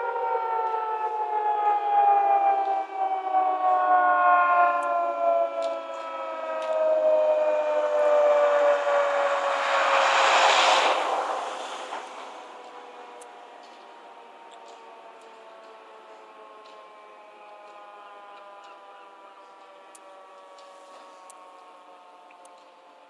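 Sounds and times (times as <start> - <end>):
warning sirens winding down: 0.0 - 23.0
broad rushing noise: 6.8 - 13.5.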